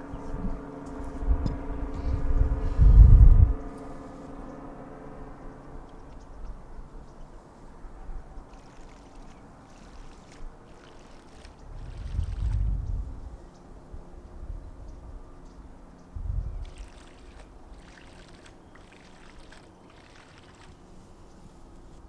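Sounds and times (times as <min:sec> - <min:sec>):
steady hum: 0:00.0 - 0:22.0
small water splashes: 0:08.4 - 0:12.6, 0:16.6 - 0:20.9
water sloshing and lapping: 0:08.4 - 0:12.7, 0:16.6 - 0:21.0.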